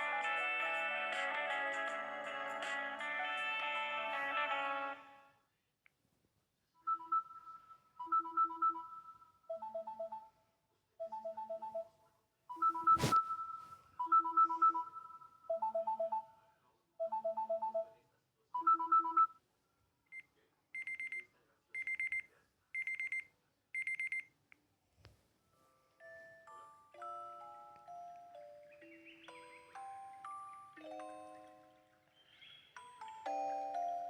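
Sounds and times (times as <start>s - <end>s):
trilled electronic ringtone melody: 6.9s - 10.4s, 11.0s - 11.9s, 12.6s - 16.3s, 17.0s - 17.9s.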